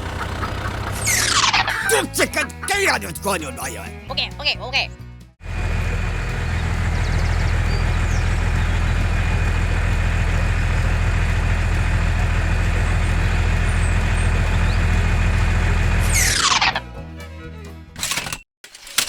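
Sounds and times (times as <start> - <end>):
engine humming: 0.0 - 1.8, 5.5 - 16.0.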